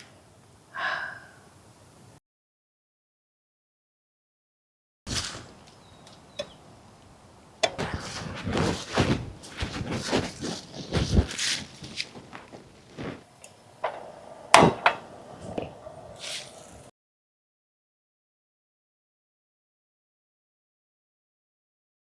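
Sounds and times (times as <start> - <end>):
camp gear knocks and clicks: 7.6 - 13.2, 13.8 - 15.8.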